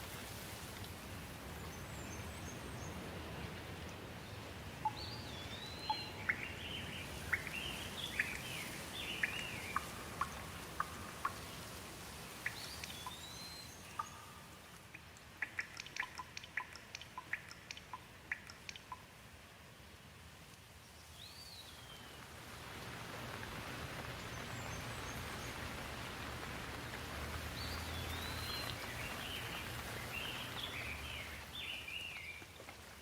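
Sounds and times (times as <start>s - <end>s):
steady rain: 0.0s - 33.0s
wood fire crackling: 22.2s - 30.2s.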